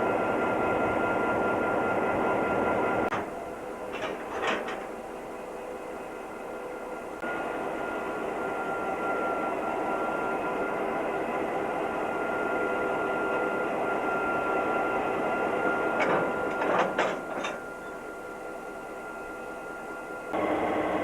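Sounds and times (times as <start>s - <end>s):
passenger train running: 0.0s - 21.0s.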